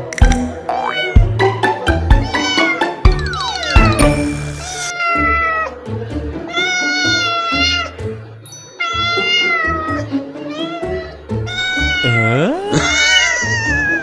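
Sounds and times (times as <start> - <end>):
cat meowing: 0.8 - 1.2, 2.2 - 2.8, 4.6 - 5.7, 6.5 - 7.9, 8.8 - 14.0.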